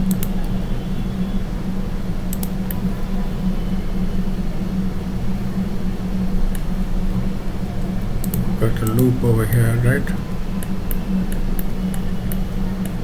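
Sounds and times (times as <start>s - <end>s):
steady low hum: 6.8s - 12.0s.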